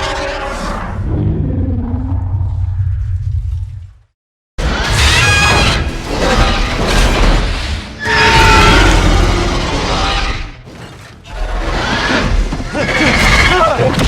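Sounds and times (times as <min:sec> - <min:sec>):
deep rumble: 0:00.8 - 0:04.2
monster screeching roars: 0:08.0 - 0:10.5.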